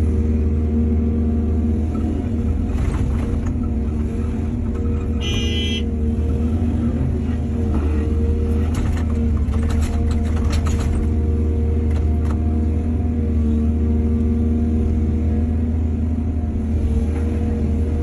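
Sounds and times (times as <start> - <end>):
excavator diesel engine humming: 0.0 - 18.0
sharp knocks and rattles: 8.6 - 11.2.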